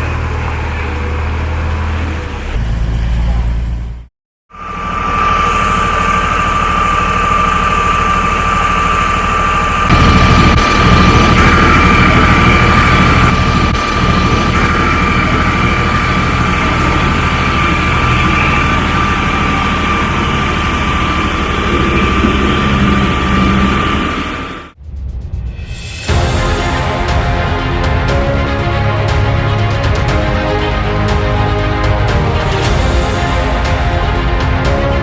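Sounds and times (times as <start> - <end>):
heavy diesel engine under load: 0.0 - 24.8
high engine whine: 0.0 - 24.8.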